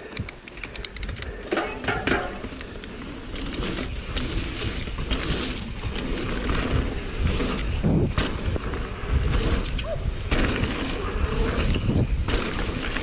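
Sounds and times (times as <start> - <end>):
bike clicks and rattles: 0.0 - 13.0
bike tyres on wet dirt: 1.3 - 13.0.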